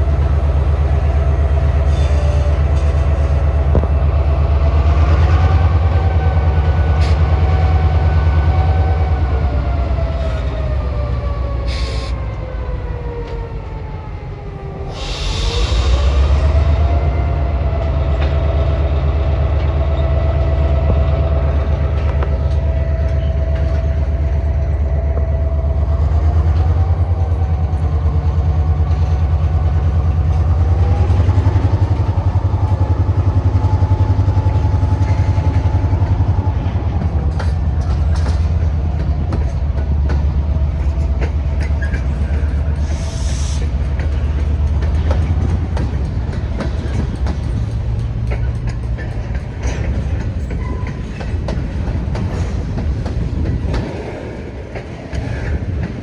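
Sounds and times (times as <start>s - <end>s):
diesel train engine rumble: 0.0s - 56.0s
wheels clicking over rail joints: 34.4s - 43.0s, 43.6s - 56.0s.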